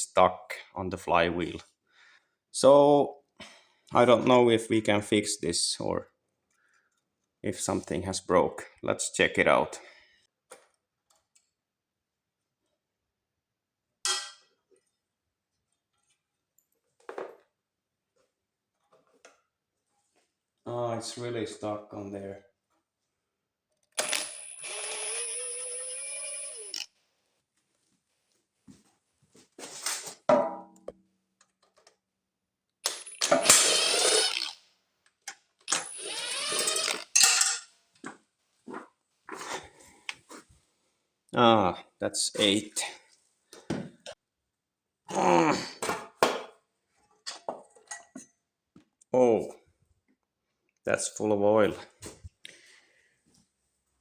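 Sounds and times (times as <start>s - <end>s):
small power tool motor: 24.0s - 26.9s, 32.9s - 34.6s, 35.7s - 37.2s.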